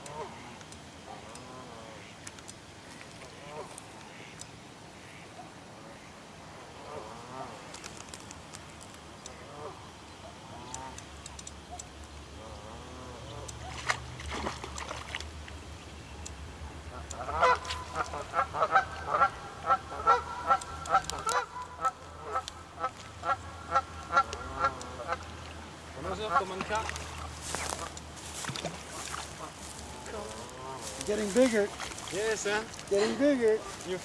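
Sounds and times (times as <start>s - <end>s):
geese honking: 2.9s - 4.4s, 5.0s - 7.7s, 9.3s - 11.0s, 16.7s - 34.0s.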